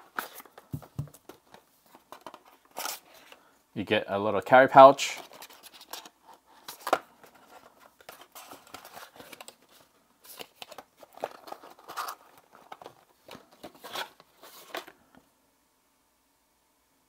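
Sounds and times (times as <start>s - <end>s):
rustling and crinkling of pouch: 5.0s - 15.1s
charging cables handled: 5.2s - 15.0s.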